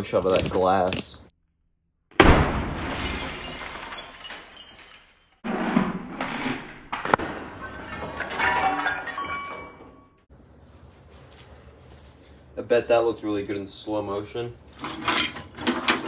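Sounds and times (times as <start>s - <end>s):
glass shattering: 2.2s - 10.2s
glass pieces clinking: 14.8s - 16.0s.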